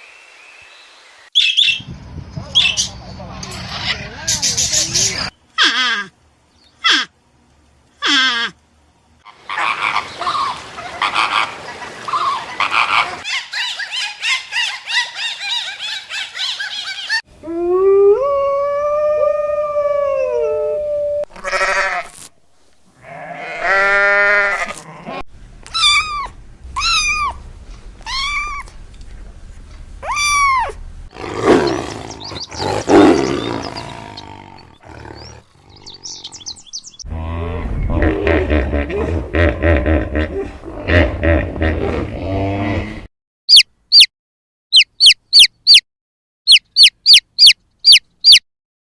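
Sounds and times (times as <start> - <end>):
long rising and falling animal call: 9.3 - 21.3
rough noisy animal call: 30.0 - 42.9.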